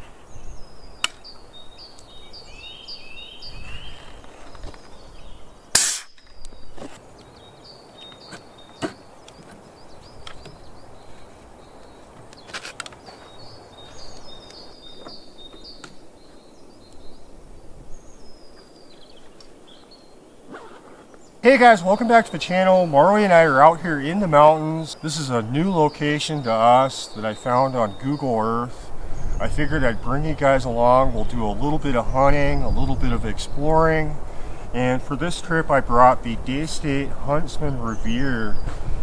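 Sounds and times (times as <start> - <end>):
small birds chirping: 0.0 - 39.0
air rifle shot: 5.8 - 6.4.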